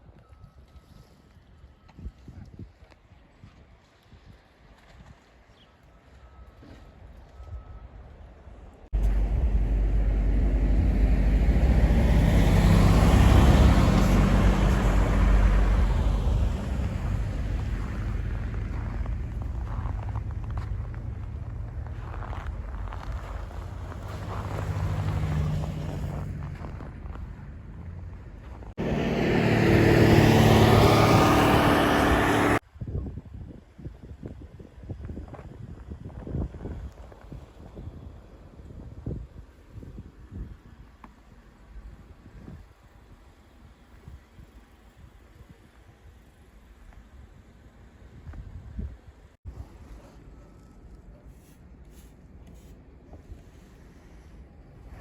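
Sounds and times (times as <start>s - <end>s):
vehicle passing by: 9.0s - 32.6s.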